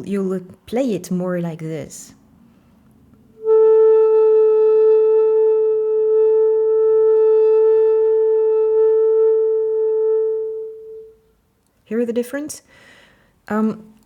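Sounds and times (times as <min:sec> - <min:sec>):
bamboo flute long steady note: 0:03.3 - 0:11.4.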